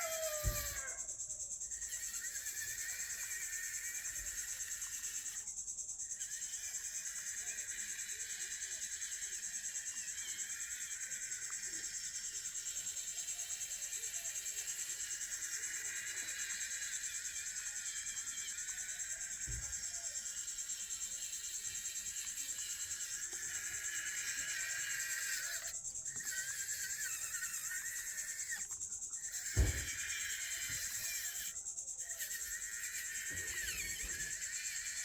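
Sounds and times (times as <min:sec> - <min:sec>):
crickets trilling: 0:00.0 - 0:35.0
low thump: 0:29.6 - 0:30.0.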